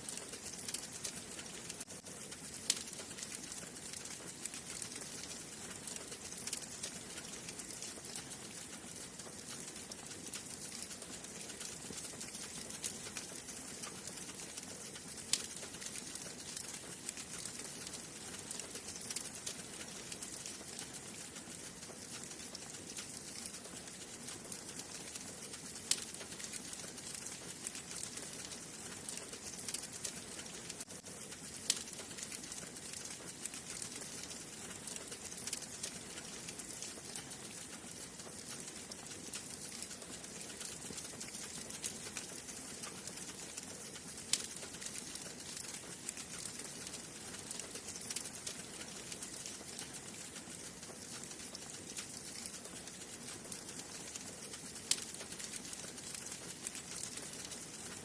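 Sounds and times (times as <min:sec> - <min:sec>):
wood fire crackling: 0:00.0 - 0:58.0.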